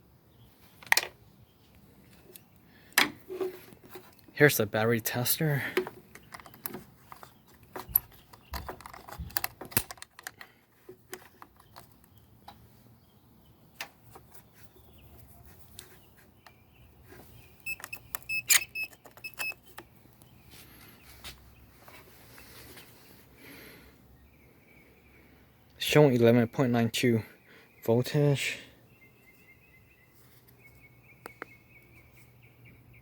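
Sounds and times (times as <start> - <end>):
short electronic beeps: 17.6 - 19.6.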